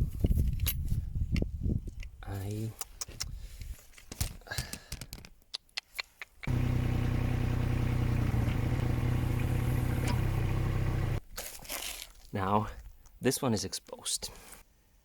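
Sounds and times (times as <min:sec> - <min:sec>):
excavator diesel engine running: 0:06.5 - 0:11.2.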